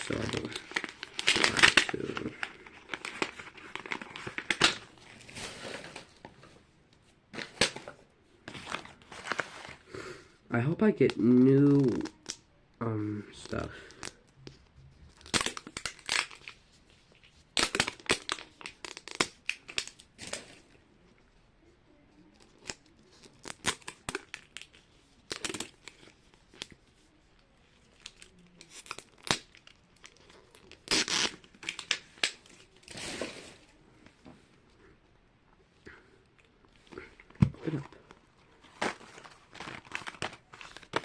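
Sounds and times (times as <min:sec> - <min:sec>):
plastic crinkling and tearing: 0:00.0 - 0:06.4, 0:08.5 - 0:09.8, 0:13.3 - 0:20.8, 0:22.3 - 0:33.8, 0:36.6 - 0:41.0.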